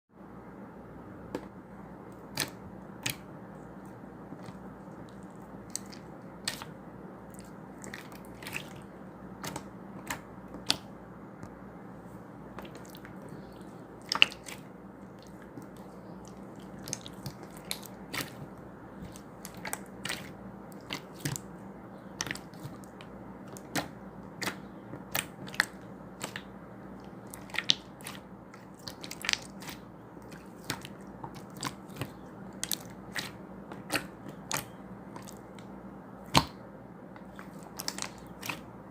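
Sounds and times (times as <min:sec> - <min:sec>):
slime squished by hand: 0:12.6 - 0:36.6, 0:37.2 - 0:38.7.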